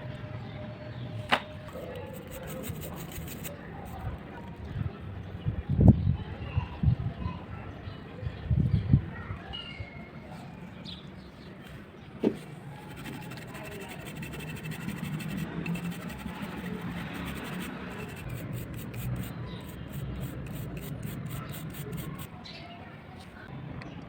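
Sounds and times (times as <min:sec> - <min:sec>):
scratching and rubbing on metal parts: 0:01.7 - 0:04.0, 0:12.3 - 0:22.3.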